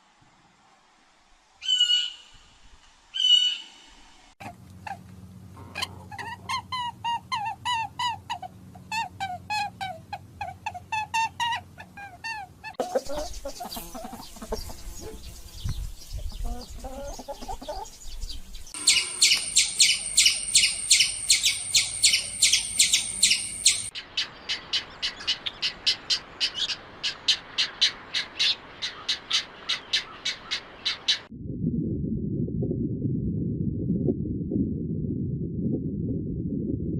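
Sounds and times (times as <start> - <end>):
birds calling: 1.6 - 2.4, 3.1 - 5.0, 5.6 - 31.3
rapid high chirps: 18.8 - 23.9.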